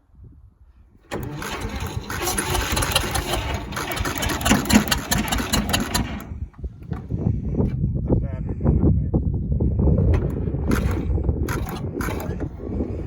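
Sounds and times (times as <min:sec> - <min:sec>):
electric starter cranking engine: 0:01.0 - 0:06.6, 0:10.2 - 0:13.0.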